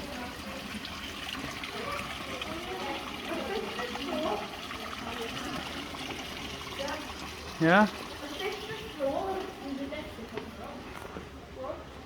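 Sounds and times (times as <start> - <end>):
faint voices: 0.0 - 12.0
trickling water: 0.0 - 12.0.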